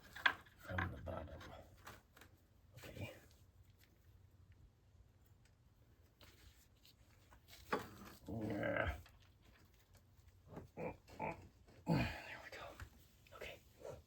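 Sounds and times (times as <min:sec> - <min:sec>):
man grunting and groaning: 0:08.3 - 0:09.0, 0:10.8 - 0:12.3.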